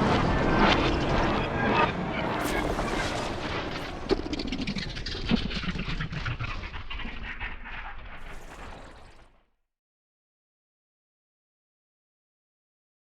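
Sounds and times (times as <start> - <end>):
dense crackling noise: 0.0 - 9.4
sharp hits: 2.3 - 4.8.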